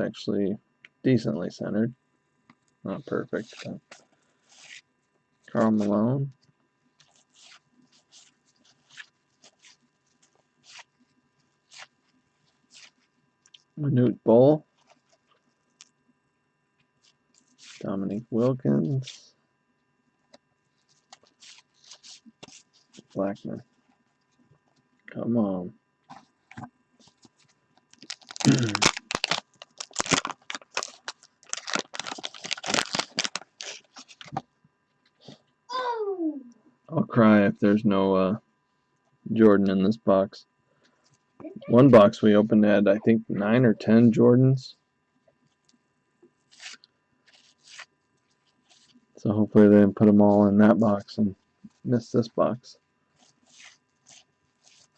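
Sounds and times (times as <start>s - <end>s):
cards sliding swishes: 3.4s - 4.8s, 17.5s - 17.8s
card pack tearing and crinkling: 27.9s - 34.4s.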